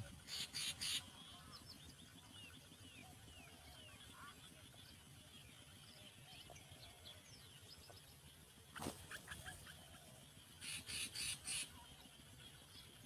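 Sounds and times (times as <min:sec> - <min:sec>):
birds chirping: 0:00.0 - 0:13.0
harsh bird calls: 0:00.2 - 0:04.5, 0:08.7 - 0:12.0
low steady rumble: 0:01.0 - 0:10.6, 0:11.6 - 0:13.0.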